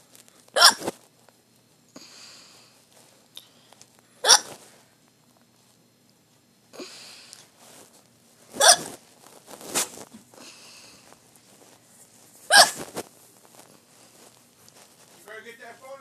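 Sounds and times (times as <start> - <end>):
person hiccupping: 0.6 - 0.9, 4.2 - 4.5, 8.6 - 9.0, 12.5 - 12.8.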